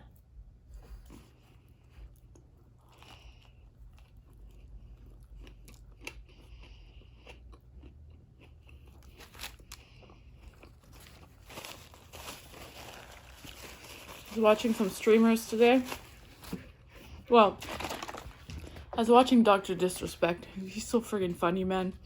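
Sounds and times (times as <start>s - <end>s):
person chewing crusty bread: 0.3s - 14.8s.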